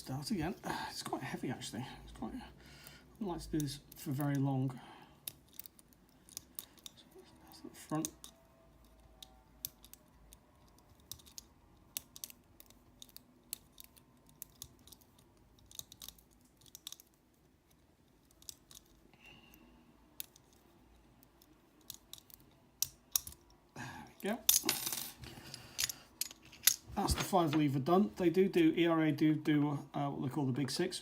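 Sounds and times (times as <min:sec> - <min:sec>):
lock picking metallic clicks: 0:07.8 - 0:17.2, 0:21.2 - 0:23.6.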